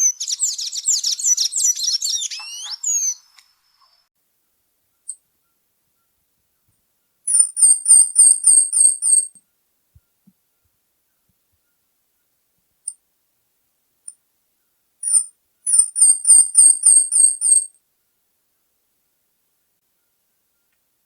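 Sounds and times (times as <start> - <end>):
bird calling high sharp notes: 0.0 - 3.3, 7.3 - 9.3, 15.0 - 17.7.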